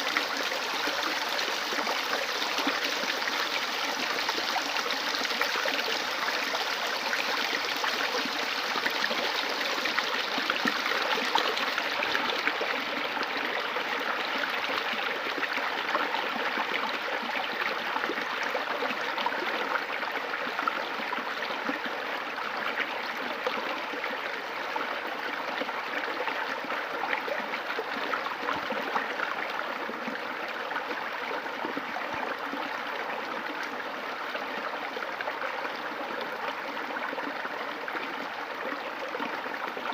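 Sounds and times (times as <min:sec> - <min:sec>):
river water flowing over rocks: 0:00.0 - 0:39.9.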